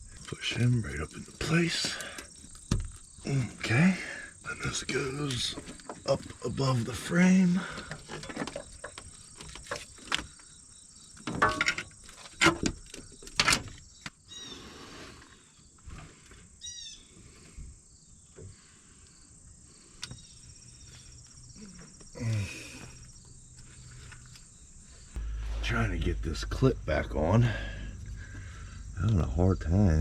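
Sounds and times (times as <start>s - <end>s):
high insect drone: 0.0s - 30.0s.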